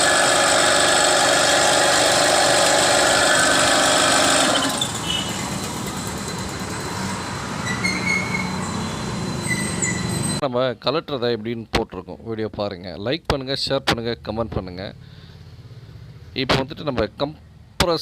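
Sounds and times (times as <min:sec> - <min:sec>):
compressor electric motor running: 0:00.0 - 0:07.6.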